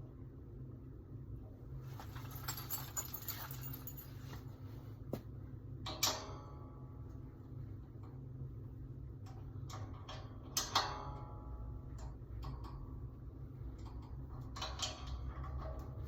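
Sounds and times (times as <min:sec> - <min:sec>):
metal rack parts rattling: 0:01.9 - 0:04.5.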